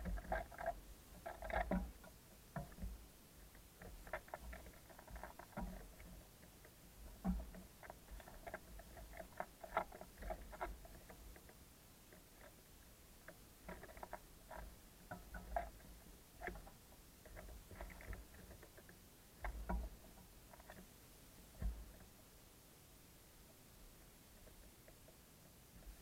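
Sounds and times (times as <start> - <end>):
birds pecking on wood: 0.0 - 20.9.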